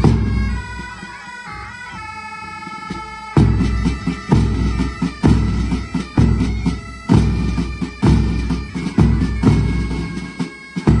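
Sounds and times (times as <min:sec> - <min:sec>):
regular drum beat: 0:00.0 - 0:00.9, 0:02.9 - 0:11.0
bagpipe drones: 0:00.0 - 0:11.0.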